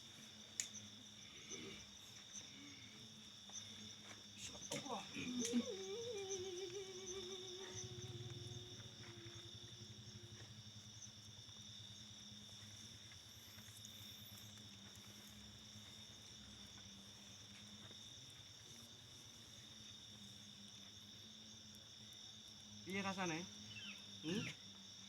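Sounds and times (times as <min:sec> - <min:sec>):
crickets chirping: 0:00.0 - 0:25.0
low steady hum: 0:04.0 - 0:16.0.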